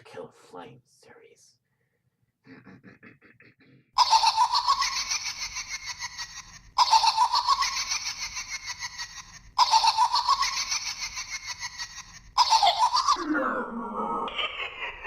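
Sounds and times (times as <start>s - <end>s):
high-pitched giggling laugh: 4.0s - 15.0s.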